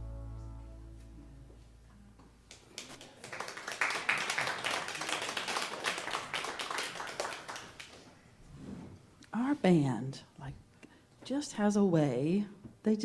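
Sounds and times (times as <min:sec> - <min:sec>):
audience applauding: 0:02.5 - 0:08.1.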